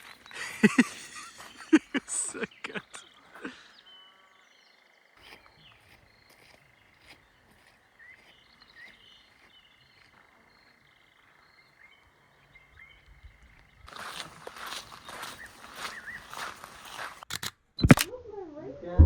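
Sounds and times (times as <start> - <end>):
small animals chirping: 0.0 - 3.9.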